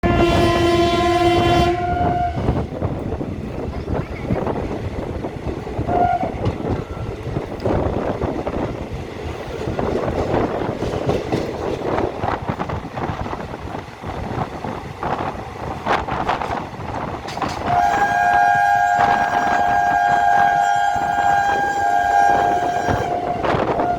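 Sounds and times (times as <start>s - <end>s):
train horn: 0.0s - 2.7s, 5.9s - 6.5s, 17.4s - 23.9s
train wheels clattering on rails: 2.4s - 23.9s.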